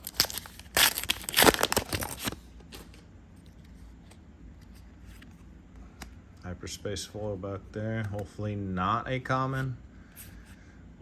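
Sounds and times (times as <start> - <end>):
foil wrapper crinkling and tearing: 0.0 - 2.4.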